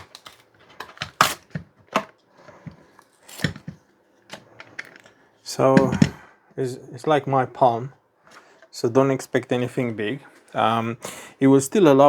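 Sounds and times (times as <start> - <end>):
lock and packaging being handled: 0.0 - 5.2.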